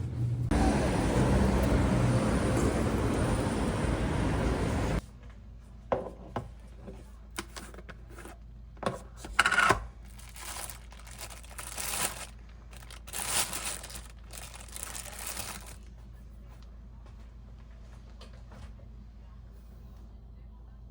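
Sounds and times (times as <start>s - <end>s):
packaging rustling and crinkling: 10.1s - 15.8s.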